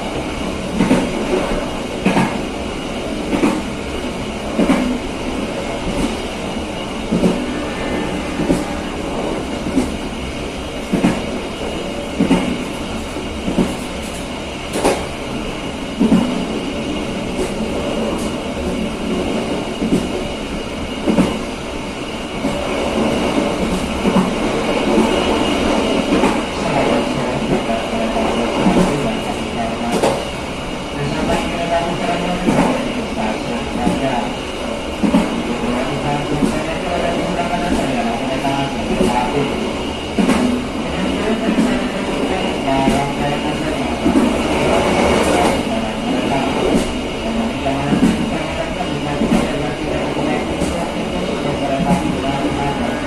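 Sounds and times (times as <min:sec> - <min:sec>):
train wheels rumbling on rails: 0:00.0 - 0:53.0
clack over rail joints: 0:03.3 - 0:03.7, 0:04.6 - 0:05.0, 0:12.2 - 0:15.1, 0:29.9 - 0:30.3, 0:40.2 - 0:40.6.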